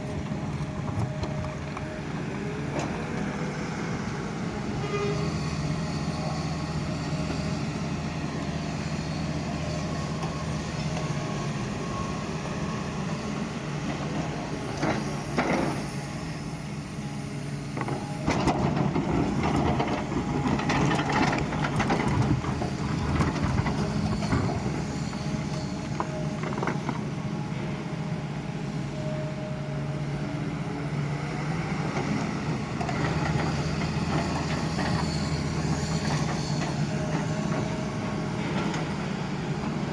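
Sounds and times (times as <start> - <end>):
excavator bucket clunking and scraping: 0.0 - 3.3, 13.9 - 16.0, 17.7 - 27.2, 31.8 - 39.9
excavator diesel engine running: 0.0 - 39.9.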